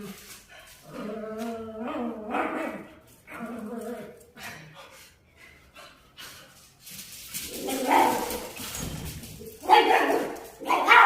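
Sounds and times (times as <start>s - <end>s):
dogs barking and yapping: 7.1s - 11.0s.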